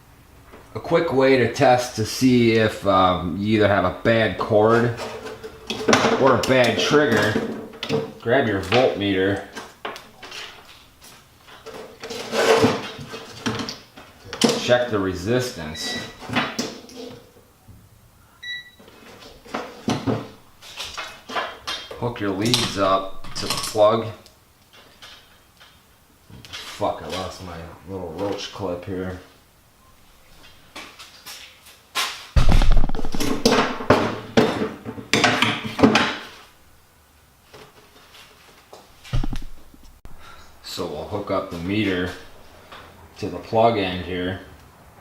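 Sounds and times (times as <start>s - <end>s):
metal tools clattering: 4.7s - 8.2s, 19.6s - 23.9s
voltmeter beep: 18.4s - 18.8s
heavy bump: 32.4s - 34.4s.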